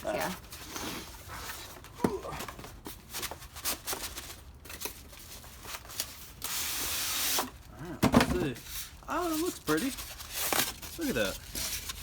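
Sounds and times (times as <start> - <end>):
paper rustling and crinkling: 8.2 - 12.0.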